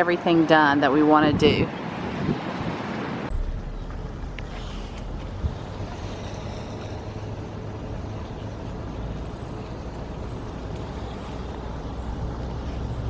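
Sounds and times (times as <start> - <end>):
road noise inside car: 2.8 - 13.0
low engine rumble: 3.3 - 13.0.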